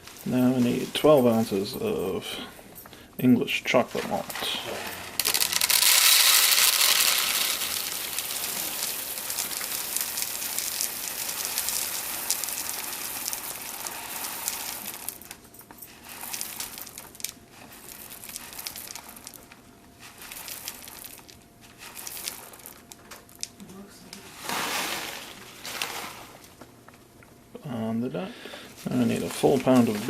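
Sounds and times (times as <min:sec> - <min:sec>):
grain pouring onto scale: 0:04.1 - 0:19.4, 0:20.0 - 0:23.5, 0:24.3 - 0:26.5
bag rustling: 0:24.2 - 0:26.6.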